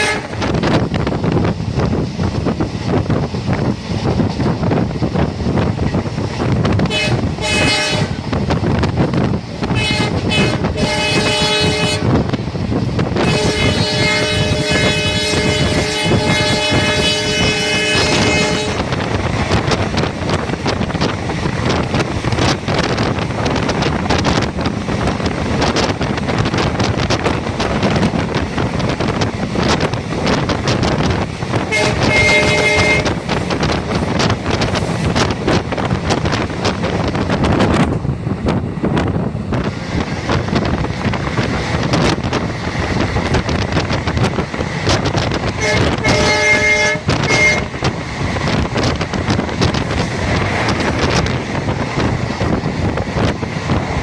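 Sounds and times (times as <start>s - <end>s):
train horn blasts: 0.0s - 0.5s, 6.8s - 8.3s, 9.7s - 12.2s, 13.2s - 19.0s, 31.6s - 33.4s, 45.5s - 47.8s
train rumble and wind noise: 0.0s - 54.0s.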